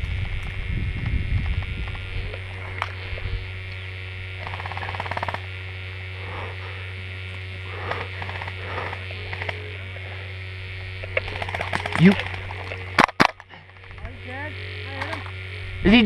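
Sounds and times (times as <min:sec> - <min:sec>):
rapid ticks: 0:00.0 - 0:14.2
low electrical hum: 0:00.0 - 0:16.0
sharp clicks: 0:04.4 - 0:05.5, 0:07.3 - 0:09.7, 0:10.8 - 0:14.2, 0:14.9 - 0:15.4.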